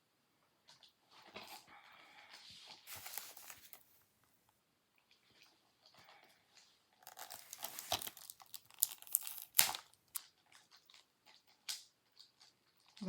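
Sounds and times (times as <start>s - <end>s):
plastic shrink-wrap tearing and crinkling: 2.8s - 3.9s, 7.0s - 10.8s.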